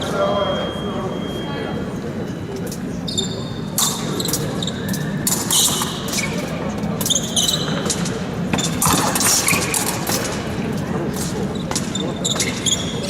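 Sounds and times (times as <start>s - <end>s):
murmur of fencing hall: 0.0s - 13.0s.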